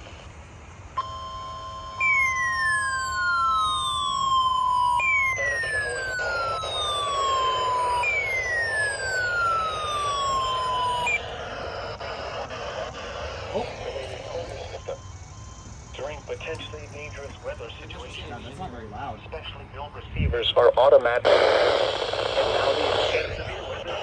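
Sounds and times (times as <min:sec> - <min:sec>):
steady alarm tone: 0:00.9 - 0:20.5
siren-like alarm sweeps: 0:01.0 - 0:20.0.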